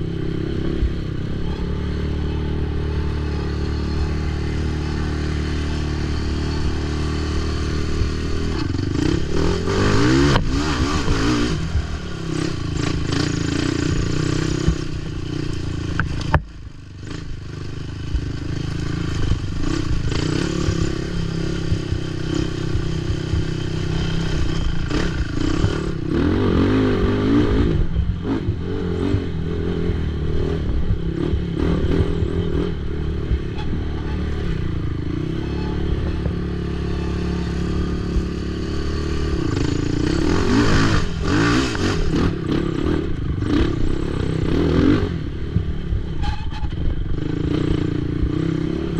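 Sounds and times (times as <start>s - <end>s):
quad engine revving: 0.0s - 48.9s
quad clattering and scraping: 27.8s - 44.7s.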